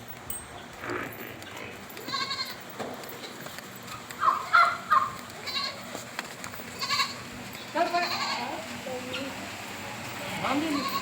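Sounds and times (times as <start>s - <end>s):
livestock bleating: 0.8s - 2.6s, 5.4s - 5.9s, 6.8s - 8.6s, 10.2s - 11.0s.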